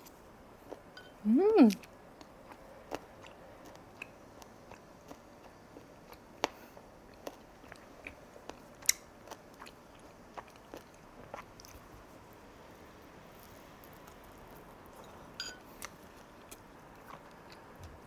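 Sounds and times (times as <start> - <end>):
person chewing: 6.1 - 11.9, 13.4 - 17.8.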